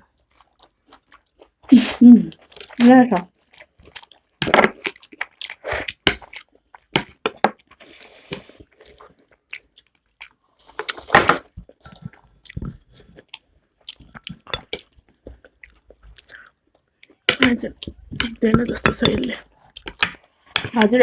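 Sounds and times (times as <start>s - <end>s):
person chewing and lip smacking: 0.1s - 1.7s, 3.4s - 18.4s, 19.5s - 20.7s
hissing sounds: 7.8s - 8.7s.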